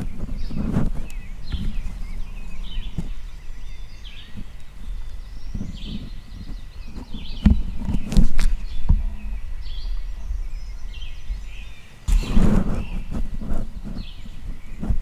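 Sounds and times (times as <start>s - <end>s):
songbirds chirping and warbling: 0.0s - 15.0s
soft thumps: 12.1s - 13.5s
steady low rumble: 12.1s - 13.5s.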